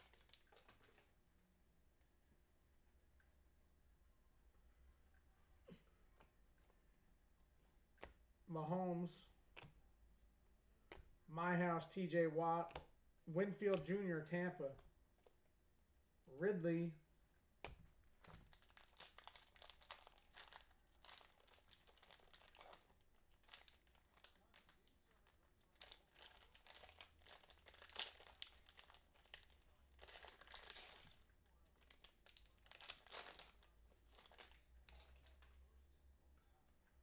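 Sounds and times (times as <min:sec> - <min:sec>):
cellophane crinkling and tearing: 0:00.0 - 0:01.1, 0:18.1 - 0:35.5.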